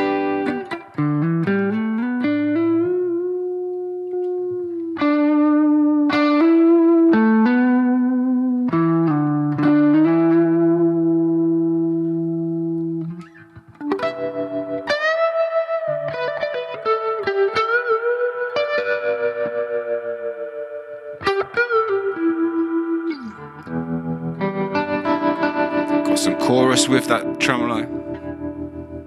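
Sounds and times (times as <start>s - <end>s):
electric guitar notes and chords: 0.0s - 29.0s.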